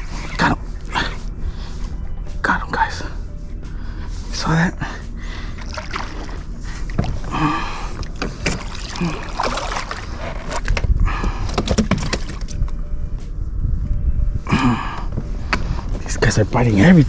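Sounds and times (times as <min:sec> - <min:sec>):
low wind rumble on microphone: 0:00.0 - 0:17.0
water splashing against boat: 0:05.4 - 0:12.7.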